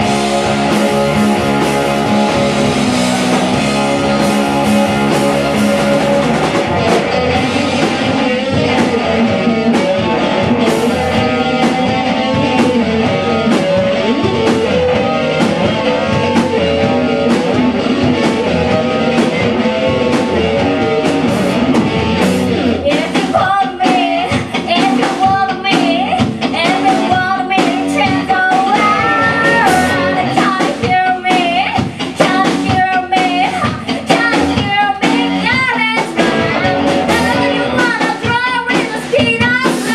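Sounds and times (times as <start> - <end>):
rock band music with singing: 0.0 - 39.9
wavering lead melody: 28.8 - 30.3.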